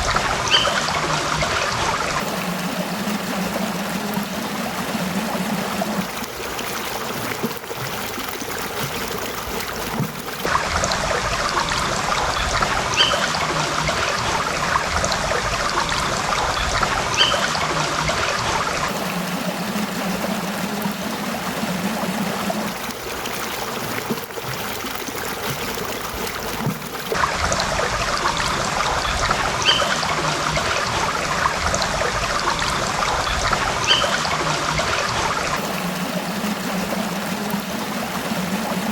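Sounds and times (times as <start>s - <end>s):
small streams trickling: 0.0s - 38.9s.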